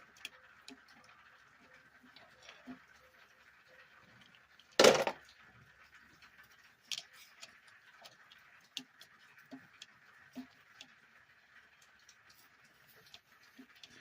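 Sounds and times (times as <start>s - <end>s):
metallic clatter: 4.8s - 5.2s
tools clicking and tapping: 4.8s - 5.2s.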